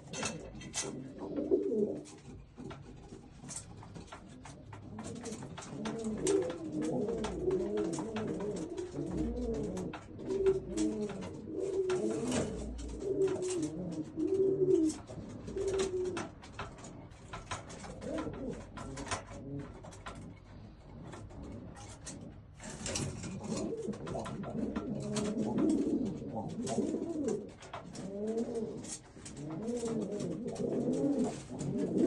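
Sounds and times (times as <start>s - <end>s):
pigeons cooing: 0.0s - 32.0s.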